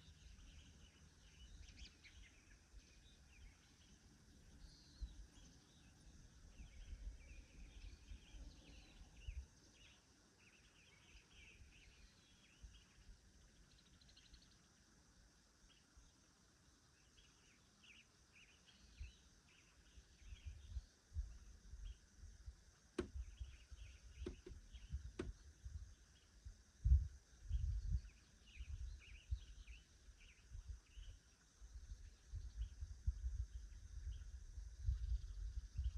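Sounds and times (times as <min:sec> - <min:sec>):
songbirds chirping and singing: 0:00.0 - 0:15.0, 0:15.6 - 0:22.3, 0:23.0 - 0:26.6, 0:27.2 - 0:35.9
high insect-like hiss: 0:00.0 - 0:35.9.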